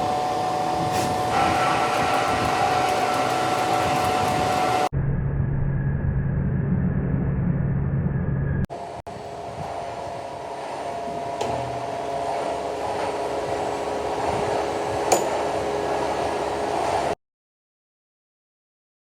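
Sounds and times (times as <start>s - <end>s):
lathe machine whine: 0.0s - 4.9s, 8.7s - 17.2s.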